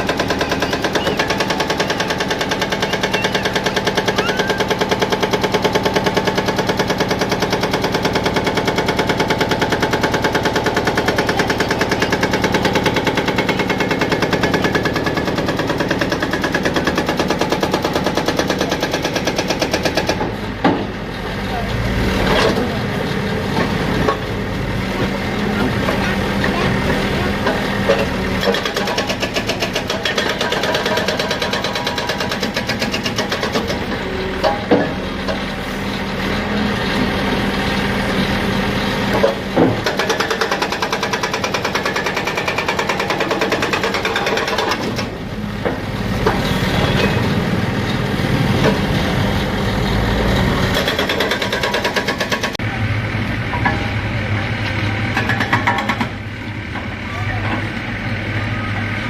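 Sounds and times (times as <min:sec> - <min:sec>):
engine running steadily: 0:00.0 - 0:59.0.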